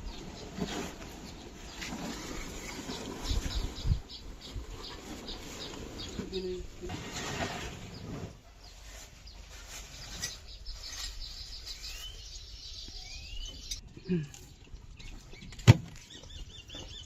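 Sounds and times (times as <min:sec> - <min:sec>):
faint bird chirps: 0:07.9 - 0:14.4.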